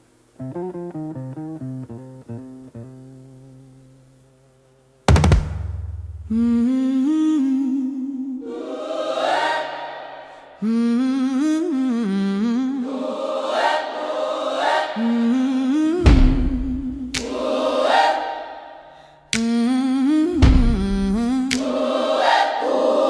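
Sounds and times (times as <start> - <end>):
wordless choir-like singing: 6.3 - 23.0.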